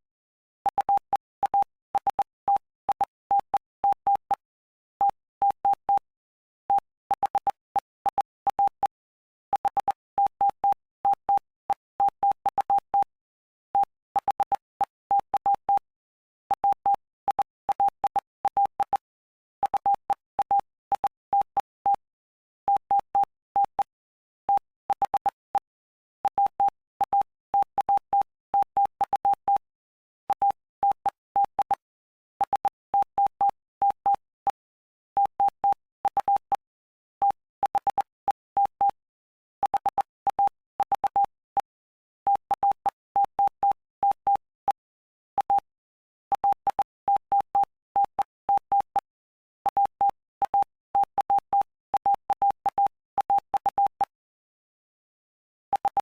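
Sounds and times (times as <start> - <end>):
morse code beeps: 0.7 - 6.1, 6.7 - 13.1, 19.6 - 22.1, 24.5 - 29.7, 30.3 - 34.6, 35.2 - 39.0, 39.6 - 41.7, 42.3 - 44.8, 45.4 - 45.7, 46.3 - 49.1, 49.7 - 54.2, 55.7 - 56.0.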